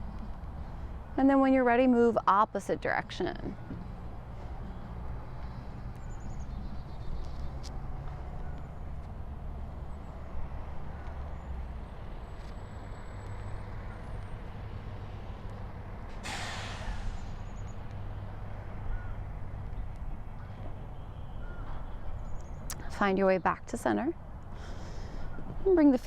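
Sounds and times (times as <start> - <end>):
distant road traffic rumble: 0.0 - 26.0
sudden hiss: 16.2 - 17.4.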